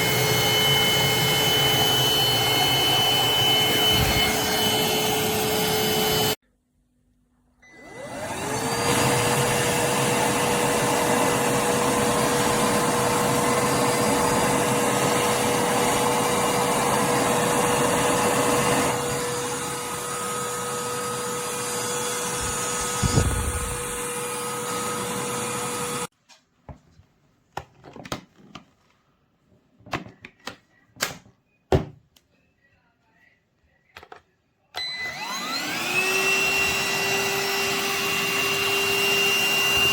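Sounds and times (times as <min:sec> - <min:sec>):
handheld vacuum cleaner whine: 0:00.0 - 0:06.4, 0:07.6 - 0:26.1, 0:34.8 - 0:39.9.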